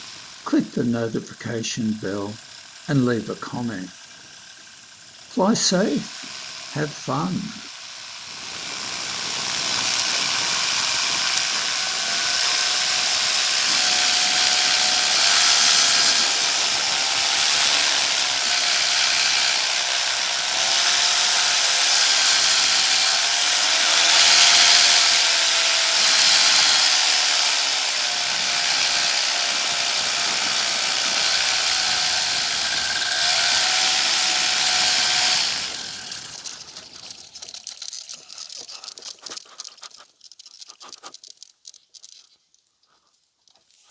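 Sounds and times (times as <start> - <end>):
paramotor engine and propeller: 0.0 - 40.0
faint scratching: 36.7 - 43.9.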